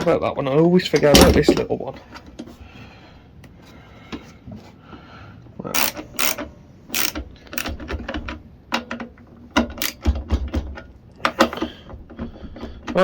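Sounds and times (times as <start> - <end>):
ratchet wrench clicking: 5.8 - 8.0, 9.8 - 10.1.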